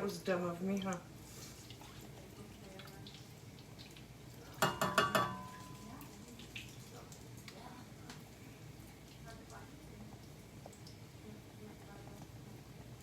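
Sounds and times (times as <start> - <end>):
metal utensil clinking on cookware: 4.6 - 5.9.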